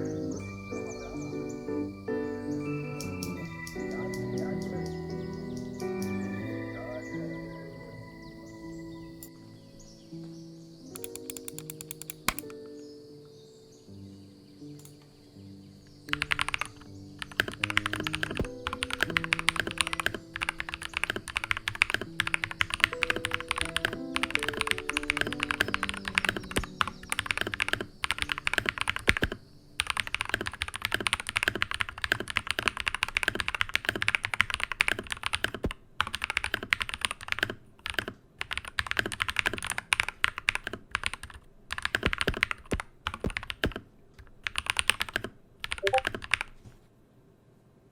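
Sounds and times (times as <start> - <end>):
background music with melody: 0.0 - 30.3, 45.8 - 46.0
typing on mechanical keyboard: 10.9 - 12.6, 16.1 - 46.6.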